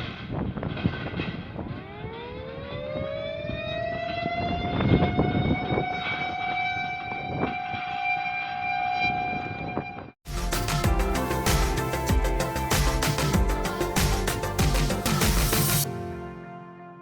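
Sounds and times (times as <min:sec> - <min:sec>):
air-raid siren winding up: 0:01.7 - 0:10.1.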